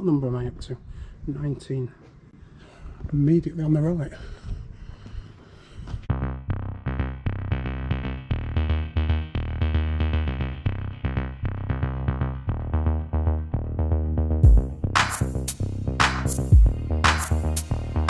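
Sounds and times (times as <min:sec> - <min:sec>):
electronic music with drum machine: 0:14.4 - 0:18.0.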